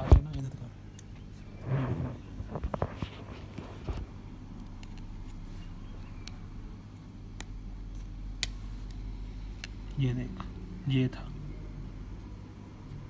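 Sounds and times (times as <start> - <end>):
low background hum: 0.0 - 13.0.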